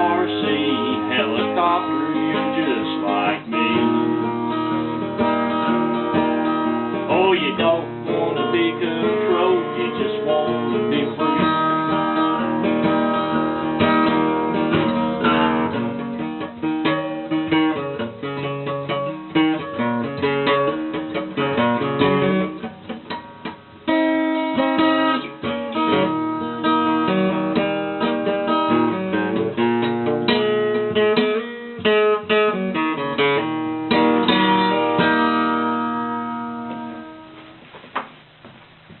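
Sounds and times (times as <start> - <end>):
acoustic guitar blues: 0.0 - 39.0.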